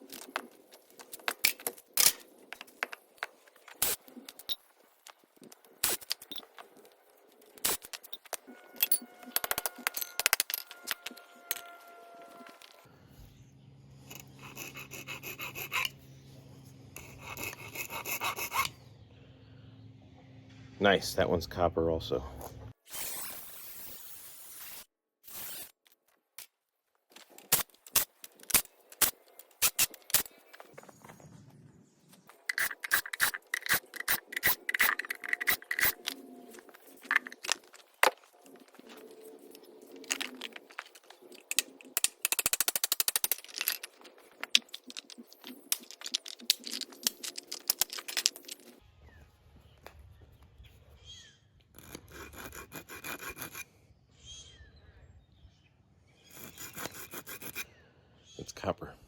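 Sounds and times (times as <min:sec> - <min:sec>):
low hum: 0:08.0 - 0:22.8
metallic clicks taps and scrapes: 0:32.4 - 0:38.2.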